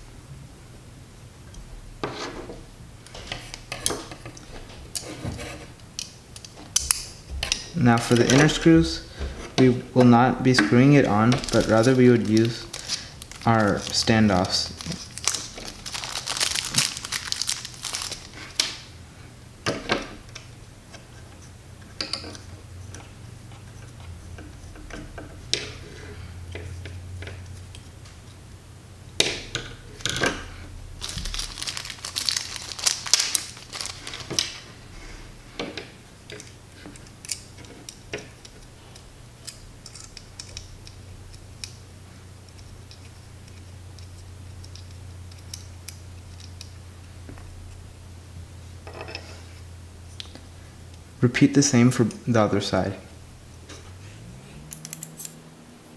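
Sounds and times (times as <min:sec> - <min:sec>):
faint low hum: 0:00.0 - 0:55.9
rustling: 0:07.5 - 0:18.9, 0:30.9 - 0:35.4
small metal parts clicking: 0:11.3 - 0:18.8, 0:31.0 - 0:34.5, 0:39.4 - 0:41.8.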